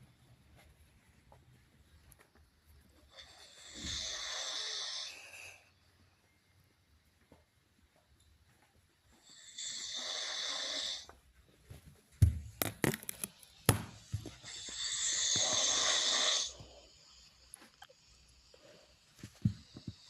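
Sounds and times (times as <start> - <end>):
person snoring: 3.2 - 5.7, 9.3 - 11.1, 14.4 - 18.6.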